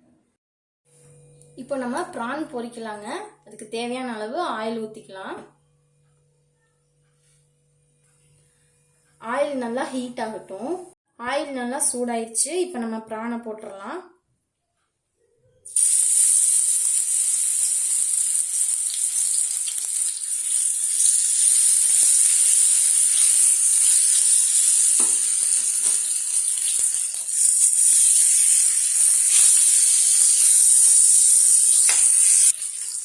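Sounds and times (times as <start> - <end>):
prawns sizzling in hot oil: 15.7 - 33.0.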